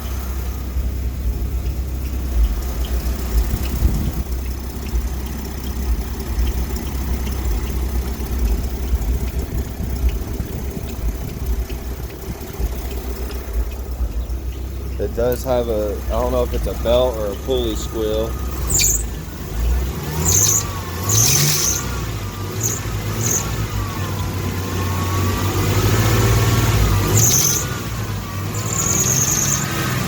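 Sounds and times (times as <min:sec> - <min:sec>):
truck engine idling: 0:00.0 - 0:30.0
faint belt squeal: 0:14.1 - 0:25.2, 0:27.1 - 0:30.0.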